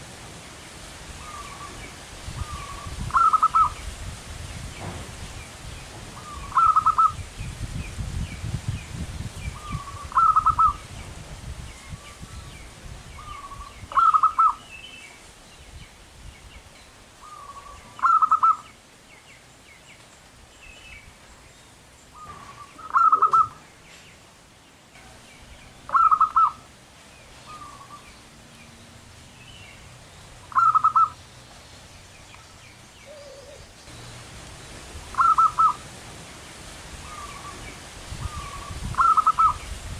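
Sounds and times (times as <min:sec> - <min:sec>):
dove cooing: 0:02.4 - 0:03.8, 0:06.2 - 0:07.2, 0:09.6 - 0:10.8, 0:13.2 - 0:14.6, 0:17.2 - 0:18.6, 0:22.2 - 0:23.6, 0:25.9 - 0:26.7, 0:30.5 - 0:31.2, 0:33.0 - 0:33.8, 0:35.1 - 0:35.8, 0:38.2 - 0:39.6.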